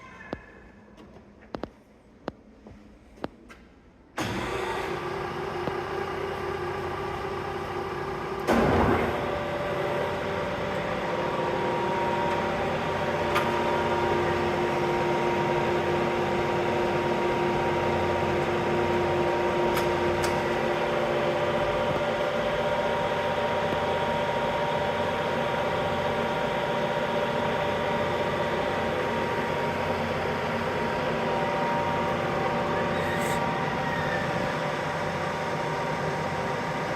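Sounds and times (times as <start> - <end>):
loud machine clunk: 8.4 - 9.4.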